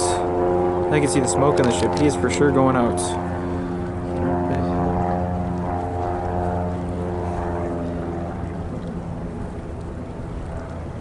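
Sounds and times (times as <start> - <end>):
steady engine drone: 0.0 - 11.0.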